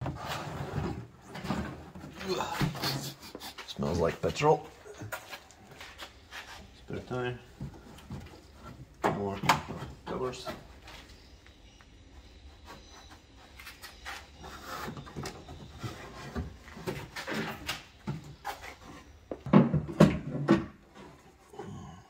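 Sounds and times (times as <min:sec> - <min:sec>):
knocks and rubbing of parts: 0:12.6 - 0:21.4.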